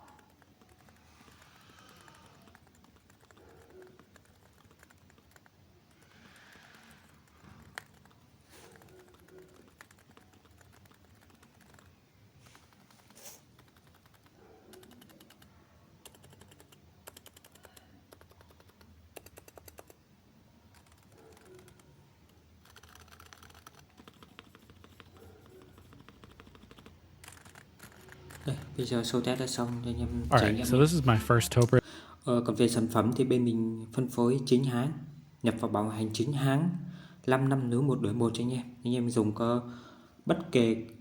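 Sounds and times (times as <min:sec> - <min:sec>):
quiet keyboard keystrokes: 0:00.0 - 0:12.0, 0:12.6 - 0:20.0, 0:20.7 - 0:29.6.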